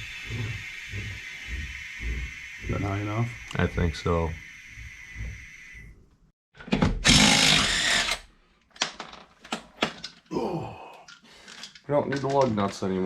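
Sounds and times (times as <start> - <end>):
impact wrench running: 7.0 - 8.3.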